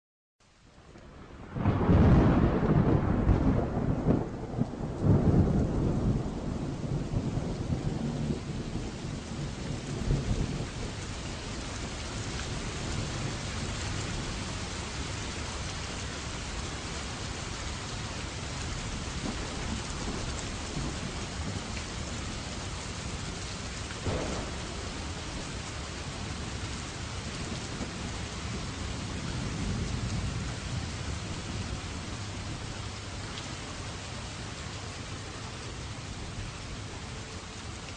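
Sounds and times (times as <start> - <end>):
steady rain pouring: 0.4 - 37.9
thunder rumbling: 1.1 - 14.5, 18.3 - 33.2.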